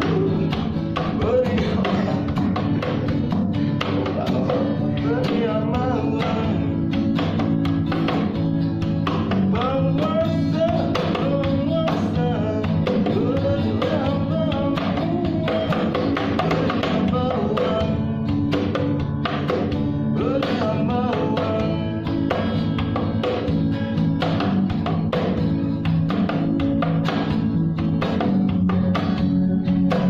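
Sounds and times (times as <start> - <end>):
person singing: 0.0 - 2.9, 3.8 - 7.0, 9.4 - 18.5, 20.0 - 22.4
acoustic guitar strumming: 0.0 - 30.0.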